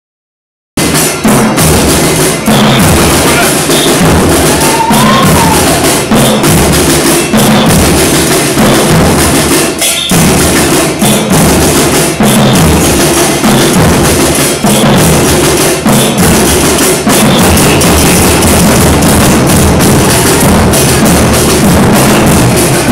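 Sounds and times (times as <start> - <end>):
street drumming: 0.8 - 22.9.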